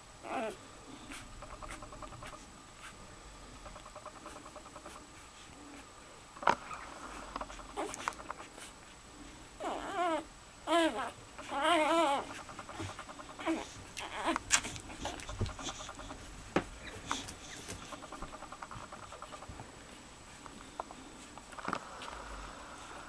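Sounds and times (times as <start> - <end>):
puppy squealing: 0.2 - 0.6, 9.6 - 16.2
puppy squeaks and whimpers: 0.2 - 2.4, 7.5 - 8.7, 9.6 - 16.3
puppies suckling: 0.2 - 5.9, 6.5 - 23.0.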